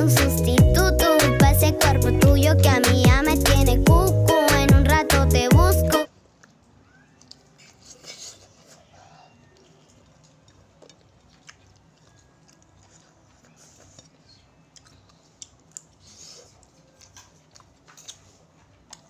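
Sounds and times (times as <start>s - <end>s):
person chewing: 5.7s - 19.0s
wet mouth clicks: 9.6s - 18.3s.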